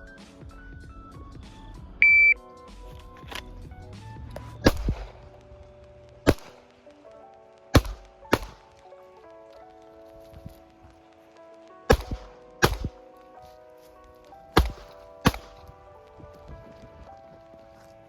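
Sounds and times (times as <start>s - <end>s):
background music: 0.0s - 18.0s
shot timer beep: 2.0s - 2.4s
gunshots: 4.6s - 5.4s, 6.2s - 6.7s, 7.8s - 8.8s, 11.9s - 13.0s, 14.6s - 15.7s.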